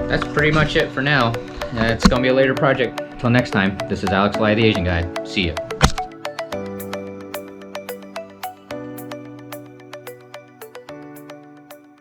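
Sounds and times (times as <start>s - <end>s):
gentle instrumental music: 0.0s - 12.0s.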